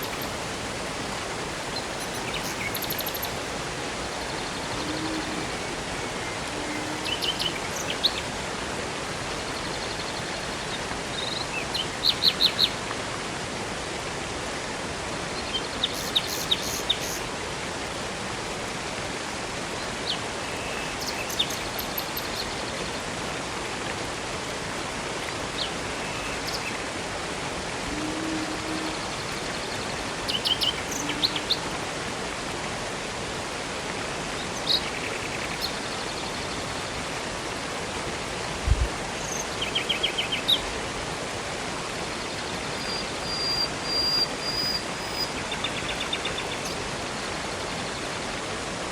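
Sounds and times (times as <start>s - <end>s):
birds chirping: 0.0s - 12.7s, 28.0s - 31.6s
flowing water rushing: 0.0s - 48.9s.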